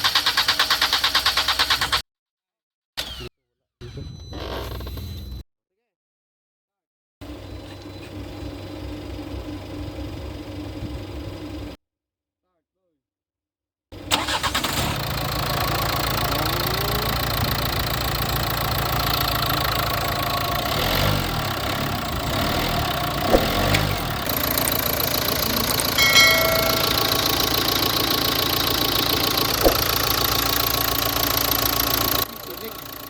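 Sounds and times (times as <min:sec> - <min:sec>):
car engine idling: 0:14.1 - 0:33.0
sharp clicks: 0:15.4 - 0:32.3
short beep: 0:26.0 - 0:27.6.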